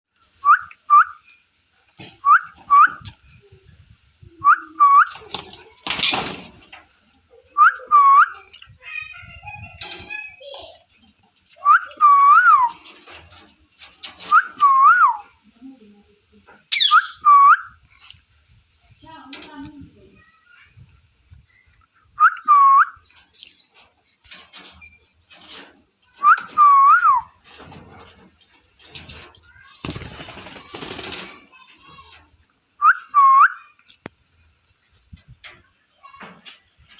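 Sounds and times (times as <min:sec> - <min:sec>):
parrot squeak: 0:16.7 - 0:17.2.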